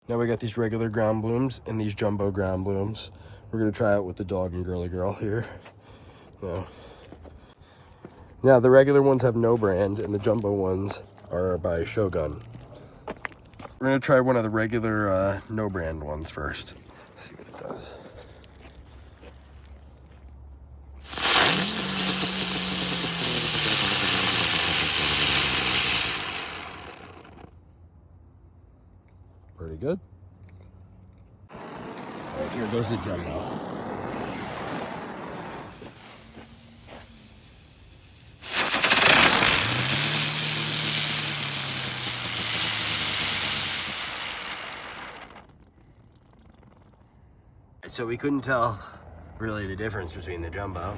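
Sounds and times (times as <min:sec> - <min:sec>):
firework hissing: 0:21.0 - 0:27.5, 0:31.5 - 0:45.6
spinning firework whirring tone: 0:21.0 - 0:27.6, 0:31.5 - 0:47.2.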